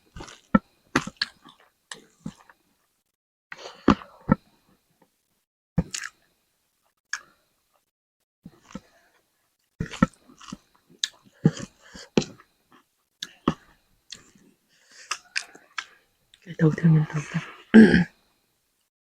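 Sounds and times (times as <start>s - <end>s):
close-up chewing and biting: 0.1s - 2.6s, 5.8s - 6.2s, 9.8s - 12.4s, 15.0s - 15.9s
mouth clicks and smacks: 9.8s - 12.3s.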